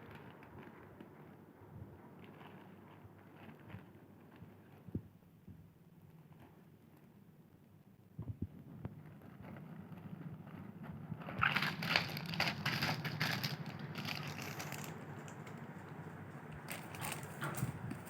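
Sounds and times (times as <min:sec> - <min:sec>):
plastic wrap crinkling: 0:09.1 - 0:18.0.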